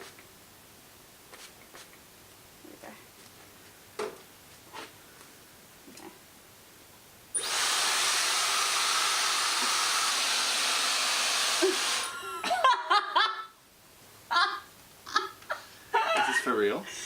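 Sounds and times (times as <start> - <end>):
hair dryer blowing: 7.4 - 12.5.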